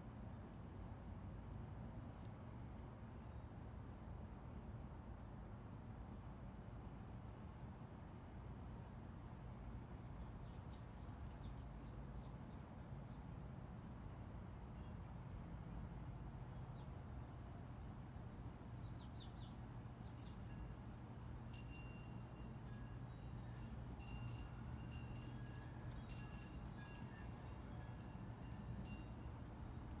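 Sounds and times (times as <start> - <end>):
faint high tinkling chimes: 3.1 - 4.6, 14.7 - 15.6, 18.6 - 30.0.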